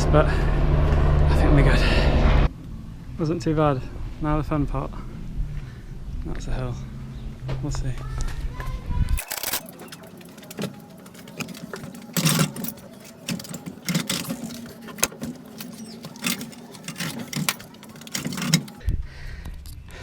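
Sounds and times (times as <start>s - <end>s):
mechanical clattering: 9.2s - 18.8s.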